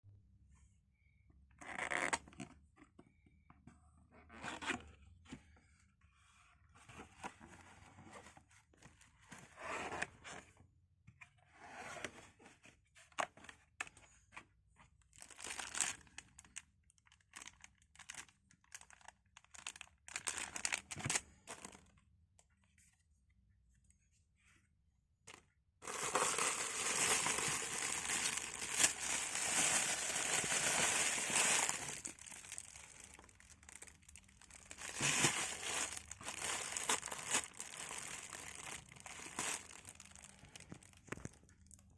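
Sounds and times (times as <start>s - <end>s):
packaging being torn and crinkled: 25.8s - 41.4s.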